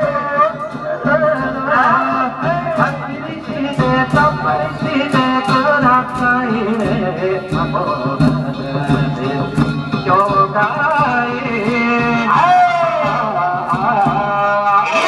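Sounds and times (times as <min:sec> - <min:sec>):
sharp percussion strikes: 0:00.0 - 0:15.0.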